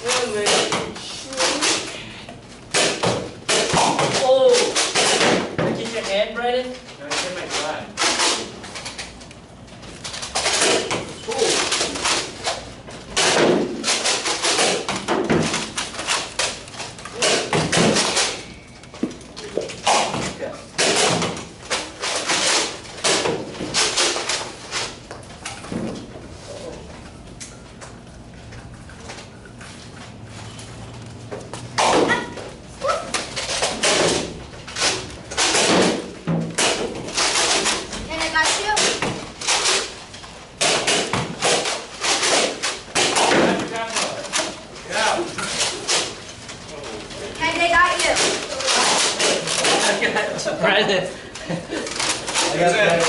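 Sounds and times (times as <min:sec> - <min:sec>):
balls striking walls and floor: 0:00.0 - 0:26.3, 0:31.2 - 0:46.9
foam balls hitting surfaces: 0:02.8 - 0:05.9.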